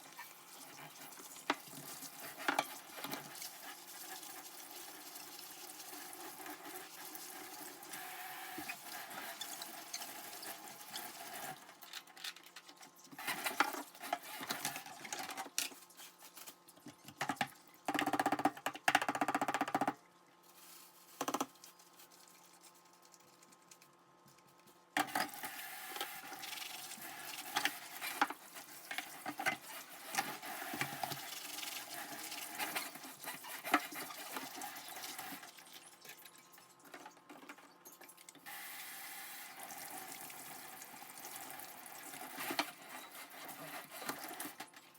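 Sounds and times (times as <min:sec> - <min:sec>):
running tap water: 0:00.0 - 0:12.2, 0:25.1 - 0:44.9.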